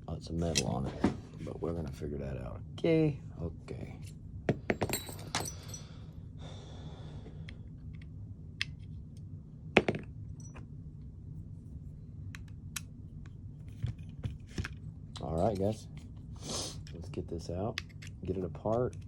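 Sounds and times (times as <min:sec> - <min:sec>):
steady low hum: 0:00.0 - 0:19.0
small parts clicking and tapping: 0:16.8 - 0:19.0.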